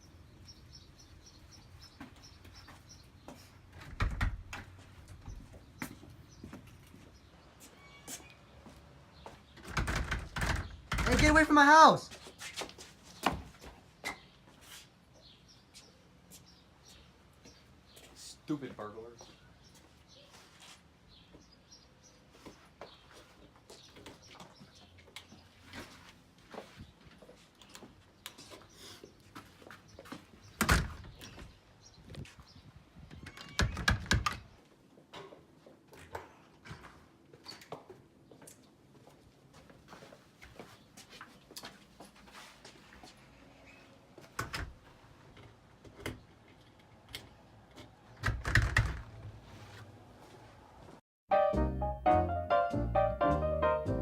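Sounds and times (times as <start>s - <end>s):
door clicks and knocks: 3.8s - 4.7s, 9.6s - 11.5s, 30.6s - 31.2s, 33.1s - 34.5s, 48.2s - 49.2s
door thumps and clatter: 3.8s - 4.7s, 9.6s - 11.5s, 30.6s - 31.4s, 33.1s - 34.5s, 48.2s - 49.2s.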